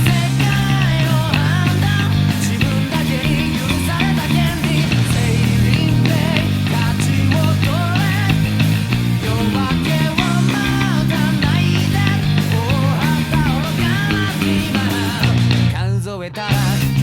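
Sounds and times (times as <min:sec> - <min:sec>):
drums: 0:00.0 - 0:17.0
electric bass guitar: 0:00.0 - 0:17.0
electric guitars: 0:00.0 - 0:17.0
man singing: 0:00.0 - 0:17.0.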